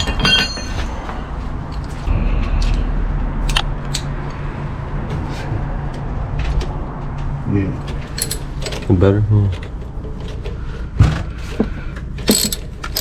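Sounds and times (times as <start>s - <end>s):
wrench clinking on metal: 0.0s - 1.0s, 8.1s - 8.8s, 12.3s - 13.0s
steady low rumble: 1.0s - 11.0s.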